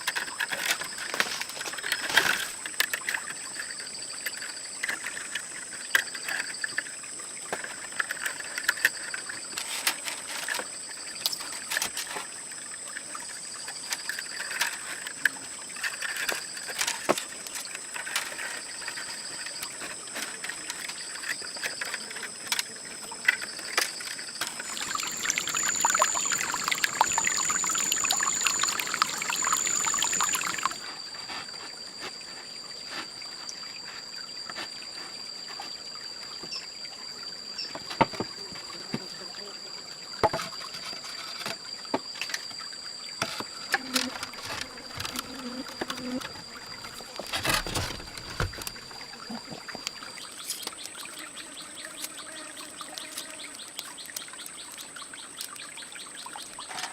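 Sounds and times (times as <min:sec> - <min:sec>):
water trickling and pouring: 0:00.0 - 0:38.9, 0:39.9 - 0:56.9
high insect drone: 0:00.0 - 0:56.9.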